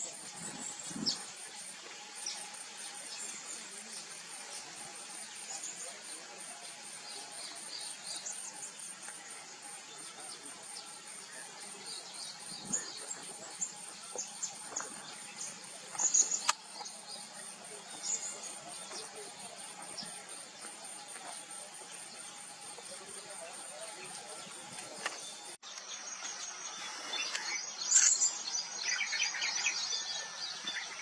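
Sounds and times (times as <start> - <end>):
pulsing insect trill: 0.0 - 25.6
sharp click: 16.0 - 16.9.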